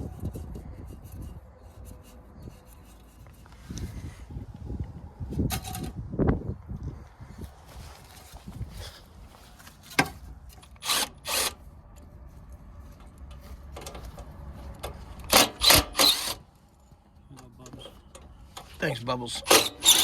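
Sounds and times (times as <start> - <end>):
power tool bursts: 15.3 - 16.4.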